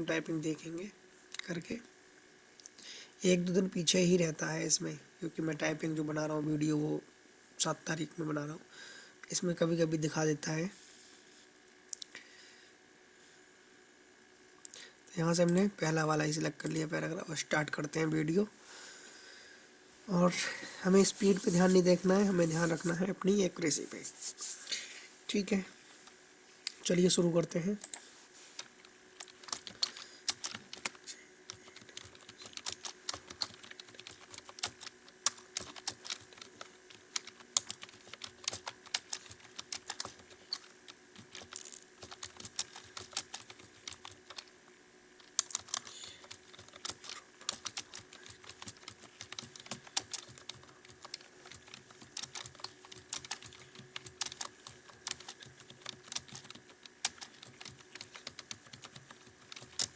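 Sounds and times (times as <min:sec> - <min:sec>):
faint steady hum: 0:00.0 - 0:59.9
fast keyboard typing: 0:28.6 - 0:44.6, 0:45.2 - 0:59.9.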